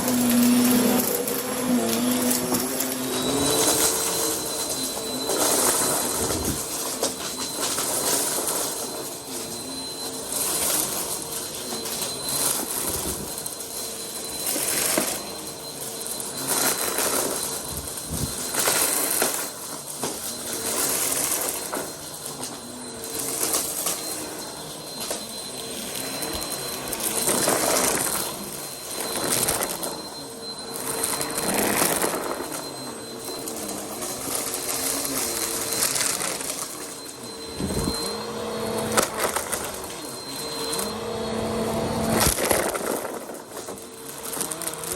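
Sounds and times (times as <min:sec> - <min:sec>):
vacuum cleaner running: 0:00.0 - 0:44.9.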